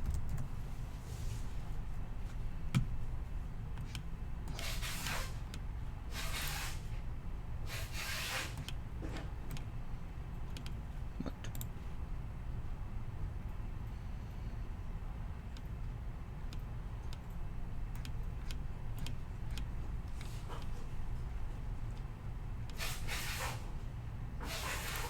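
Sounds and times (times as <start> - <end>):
steady low hum: 0.0 - 4.6, 8.6 - 22.8
short hissing swishes: 24.4 - 25.0.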